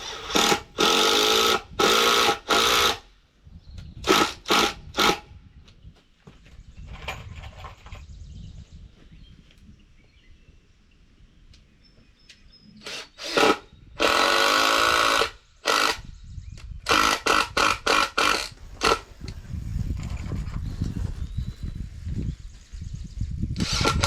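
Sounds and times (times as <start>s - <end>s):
cordless drill driving screws: 0.0s - 3.0s, 4.0s - 5.2s, 12.8s - 16.0s, 16.8s - 19.1s, 23.6s - 24.0s.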